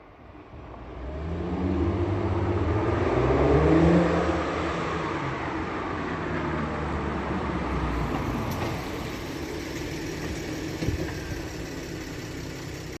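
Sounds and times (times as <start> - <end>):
car engine settling to idle: 7.9 - 13.0.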